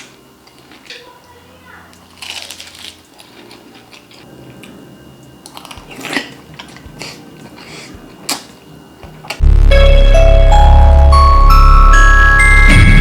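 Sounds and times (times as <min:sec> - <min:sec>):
crispy food crunching: 0:00.0 - 0:01.1, 0:01.9 - 0:09.4
loud upbeat music: 0:09.4 - 0:13.0.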